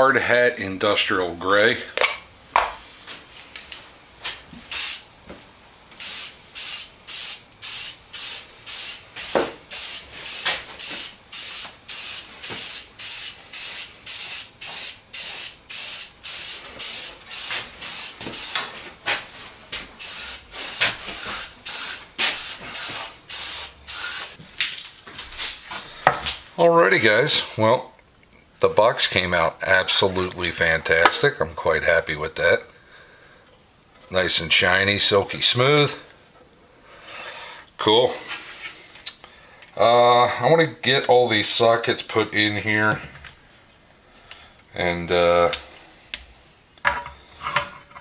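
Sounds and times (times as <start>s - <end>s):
spray paint hissing bursts: 4.7s - 5.1s, 6.0s - 18.8s, 20.0s - 24.4s.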